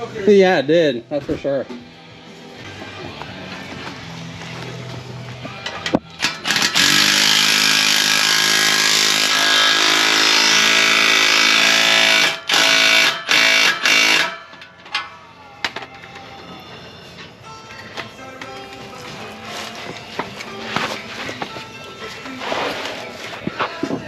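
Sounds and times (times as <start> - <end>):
impact wrench hammering: 5.6 - 15.1.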